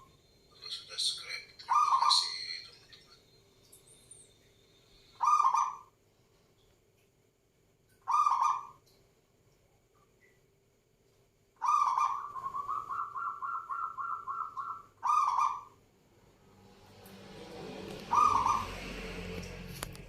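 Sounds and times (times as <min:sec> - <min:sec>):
dove cooing: 0:11.6 - 0:15.7, 0:18.0 - 0:18.9.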